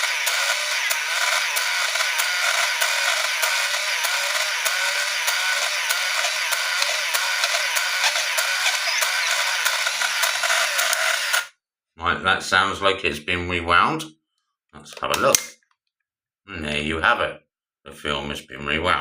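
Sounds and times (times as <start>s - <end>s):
camera motor whirring: 0.0s - 11.5s.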